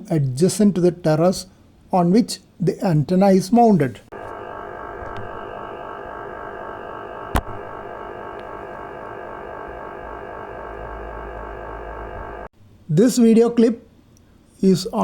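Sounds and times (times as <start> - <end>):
radio hiss: 4.1 - 12.5
radio interference buzz: 4.1 - 12.5
sharp click: 7.3 - 7.6.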